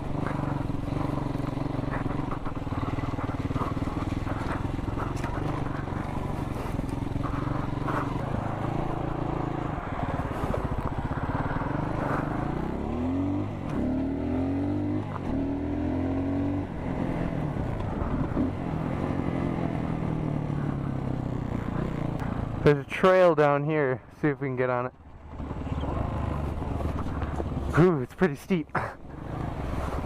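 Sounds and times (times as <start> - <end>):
dirt bike engine accelerating: 0.0 - 22.7.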